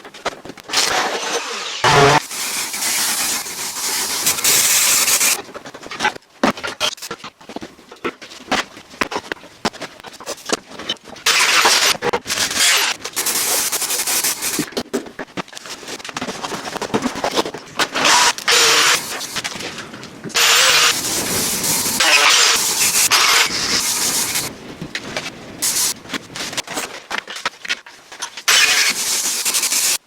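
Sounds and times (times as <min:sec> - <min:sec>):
power tool bursts: 0:00.7 - 0:05.4, 0:18.0 - 0:19.3, 0:20.4 - 0:24.5, 0:28.5 - 0:30.0.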